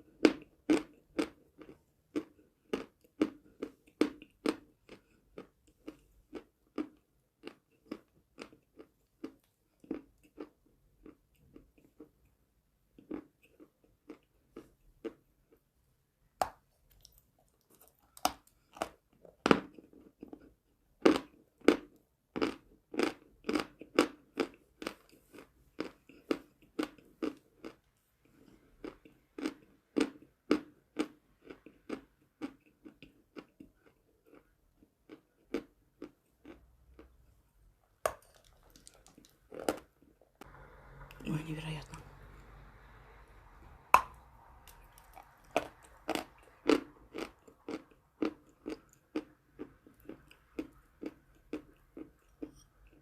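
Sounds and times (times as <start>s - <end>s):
chewing crunchy chalk: 38.1s - 40.5s, 44.0s - 53.0s.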